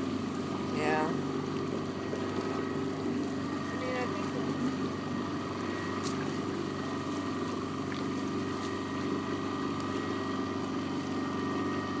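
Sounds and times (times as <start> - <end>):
boat engine humming: 0.0 - 12.0
constant high whine: 0.0 - 12.0.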